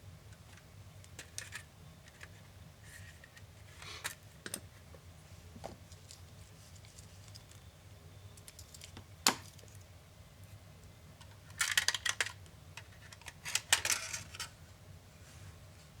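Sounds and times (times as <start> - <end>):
laptop parts clicking and rattling: 8.4 - 9.8, 11.2 - 14.5.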